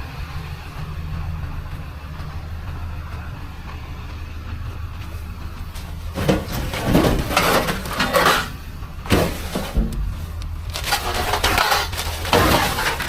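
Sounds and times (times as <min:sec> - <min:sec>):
low rumble: 0:00.0 - 0:13.0
pots clattering and knocking: 0:05.7 - 0:13.0.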